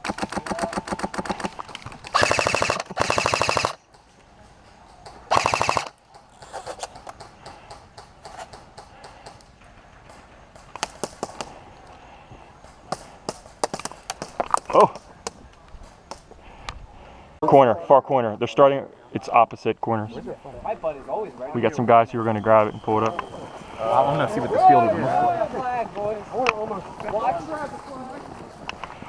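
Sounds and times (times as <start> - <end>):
airsoft gun full-auto bursts: 2.1 - 3.8, 5.3 - 6.0.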